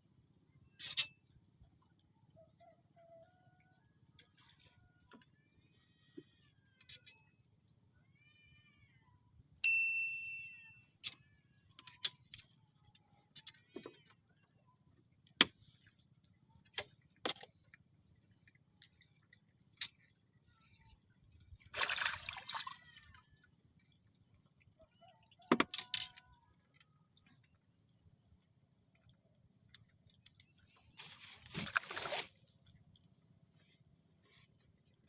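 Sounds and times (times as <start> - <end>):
ringing metallic clink: 9.6 - 10.8.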